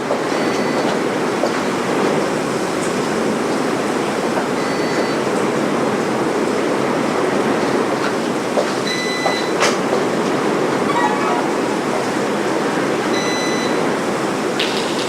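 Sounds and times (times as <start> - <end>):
heavy wind and rain roaring: 0.0 - 15.0.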